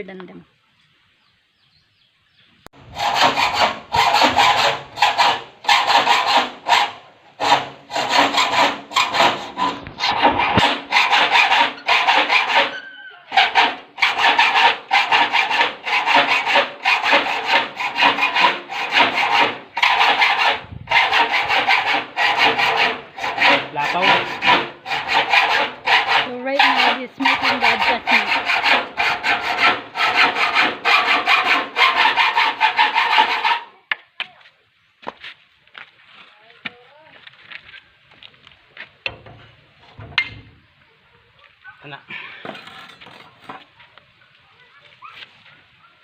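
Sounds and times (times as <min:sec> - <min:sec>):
hand tool scraping metal: 0:02.8 - 0:33.8, 0:42.4 - 0:43.8.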